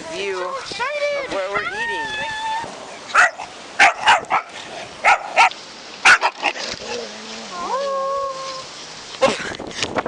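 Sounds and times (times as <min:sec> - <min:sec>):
dog barking: 0:03.1 - 0:06.4.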